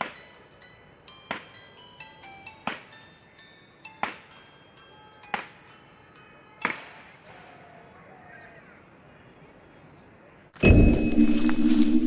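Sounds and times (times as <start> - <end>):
high chime-like ringing tones: 0.4 - 6.6, 10.6 - 12.0
sharp horror sound effect hits: 10.6 - 12.0.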